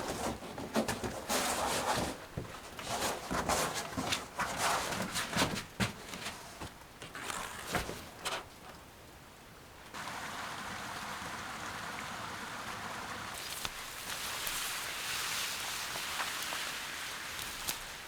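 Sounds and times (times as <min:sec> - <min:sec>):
rain hissing: 0:09.9 - 0:18.0.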